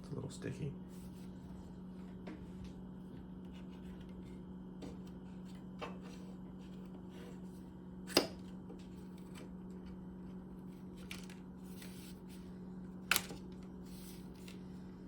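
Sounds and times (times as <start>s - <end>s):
steady low hum: 0.0s - 15.0s
hands rustling computer parts: 10.8s - 12.5s.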